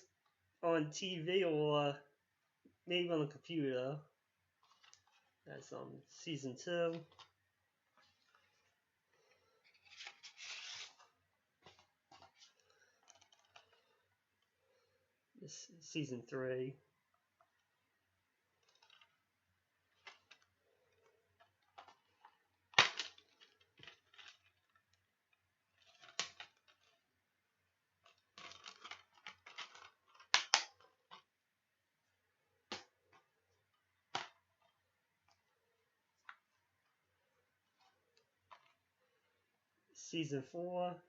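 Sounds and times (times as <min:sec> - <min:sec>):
rustling of slipcovers: 0:04.5 - 0:14.9, 0:17.2 - 0:27.2, 0:28.0 - 0:39.5.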